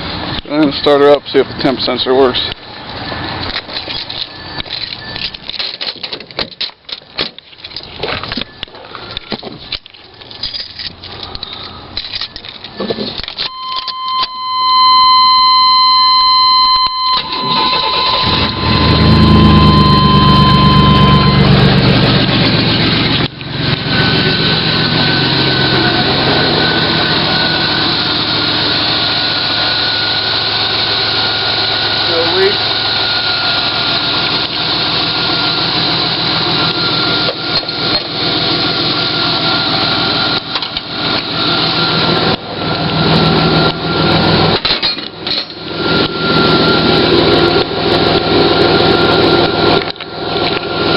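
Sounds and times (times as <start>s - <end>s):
car engine cranking and idling: 0.0s - 50.9s
electronic warning tone: 12.7s - 33.5s.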